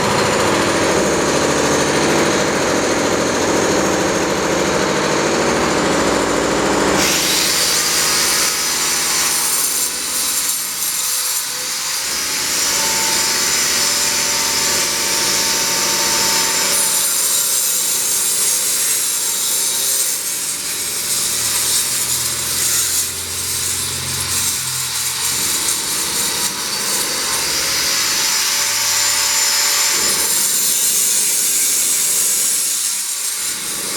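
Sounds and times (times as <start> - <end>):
angle grinder cutting brick: 0.0 - 33.9.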